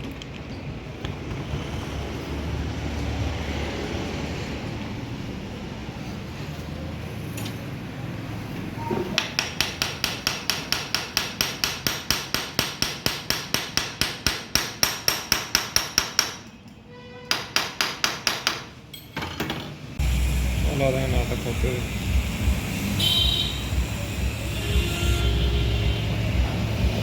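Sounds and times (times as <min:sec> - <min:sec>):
steady low hum: 0:20.0 - 0:27.0.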